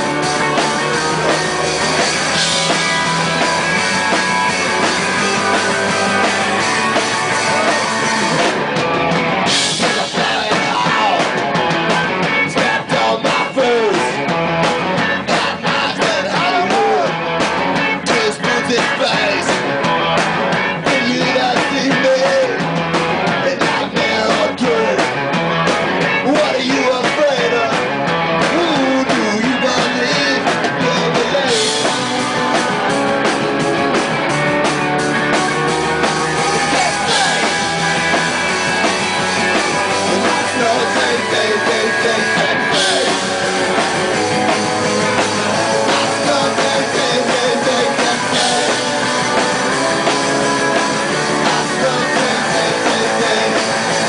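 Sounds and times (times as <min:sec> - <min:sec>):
punk rock band playing live: 0:00.0 - 0:54.0
person singing: 0:09.7 - 0:11.5, 0:12.3 - 0:14.3, 0:15.0 - 0:17.2, 0:17.9 - 0:19.7, 0:20.8 - 0:22.7, 0:23.4 - 0:25.2, 0:26.2 - 0:27.9, 0:28.5 - 0:32.4, 0:36.0 - 0:38.1, 0:38.8 - 0:54.0.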